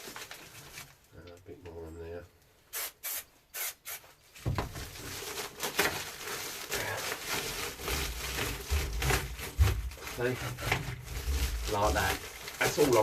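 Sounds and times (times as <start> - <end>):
cloth rubbing on panel: 6.2 - 13.0.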